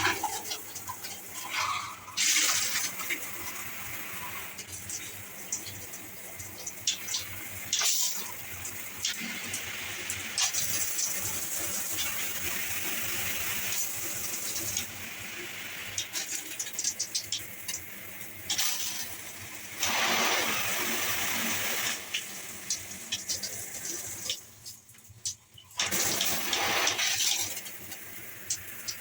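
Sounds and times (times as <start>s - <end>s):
shower water spraying: 0.0s - 29.0s.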